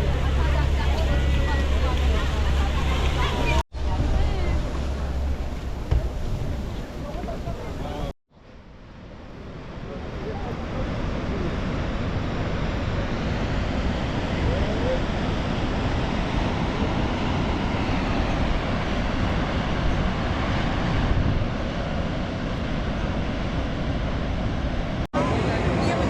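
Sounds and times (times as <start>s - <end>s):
waterfall roar: 0.0s - 8.1s.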